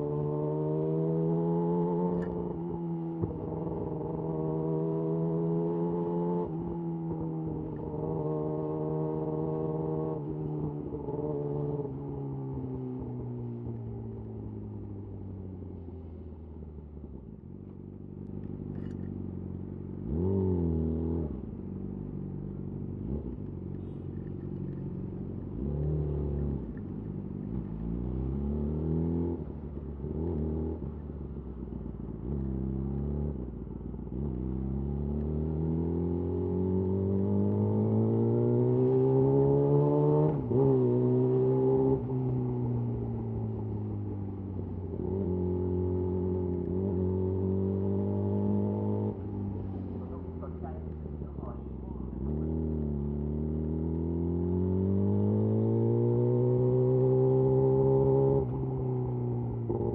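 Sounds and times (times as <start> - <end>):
motorcycle engine revving: 0.0 - 15.4, 18.1 - 59.9.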